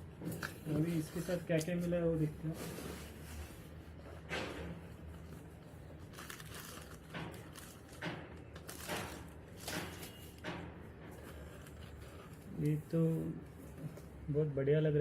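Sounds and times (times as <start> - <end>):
packaging crinkling: 5.2 - 10.4.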